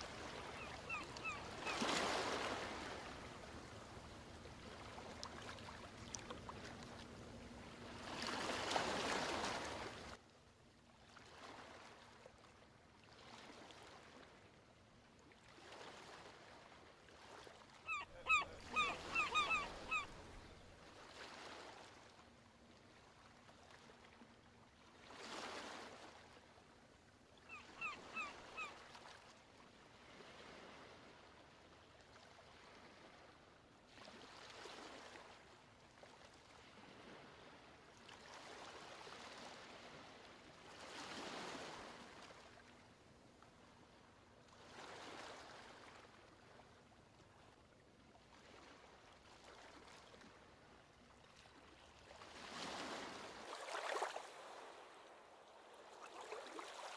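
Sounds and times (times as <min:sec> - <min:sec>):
short bird calls: 0:00.4 - 0:02.0, 0:17.9 - 0:20.6.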